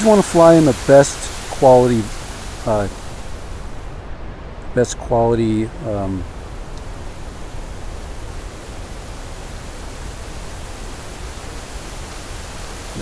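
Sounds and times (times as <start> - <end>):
waterfall rushing: 0.0 - 4.1, 5.7 - 13.0.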